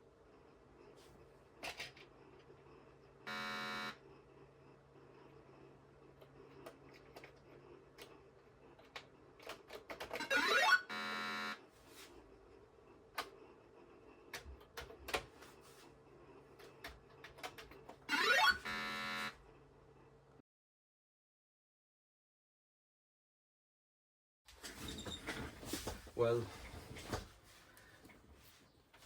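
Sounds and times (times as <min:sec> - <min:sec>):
faint steady hum: 0:00.0 - 0:09.7.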